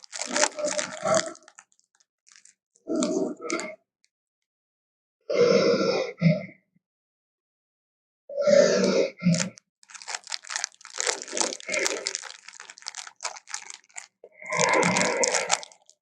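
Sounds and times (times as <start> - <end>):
crunching and tearing bites: 0.0 - 3.7, 9.2 - 16.0.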